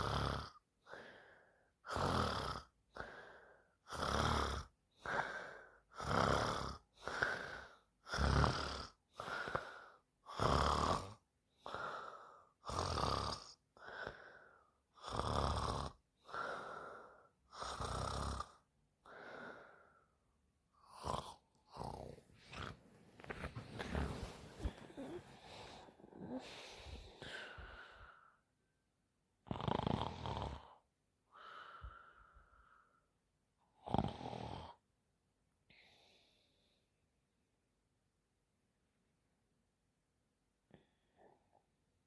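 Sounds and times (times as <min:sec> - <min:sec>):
woman snoring: 0:00.0 - 0:00.5, 0:01.9 - 0:03.1, 0:03.9 - 0:05.4, 0:06.0 - 0:09.6, 0:10.3 - 0:11.9, 0:12.7 - 0:13.5, 0:15.0 - 0:16.6, 0:17.6 - 0:18.6, 0:20.8 - 0:27.8, 0:29.4 - 0:30.8, 0:33.8 - 0:34.8
short breathing sounds: 0:22.0 - 0:28.3.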